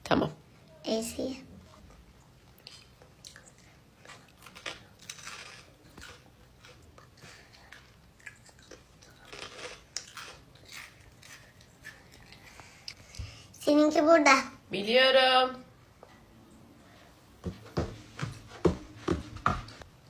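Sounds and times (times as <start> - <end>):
crunching and chewing snack: 2.5 - 12.8.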